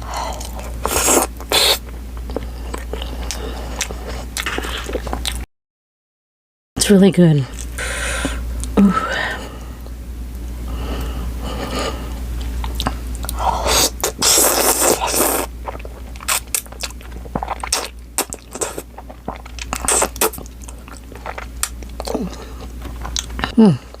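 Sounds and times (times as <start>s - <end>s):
chewing and crunching food: 0.0s - 5.5s, 12.0s - 24.0s
wet chewing clicks: 14.0s - 23.5s.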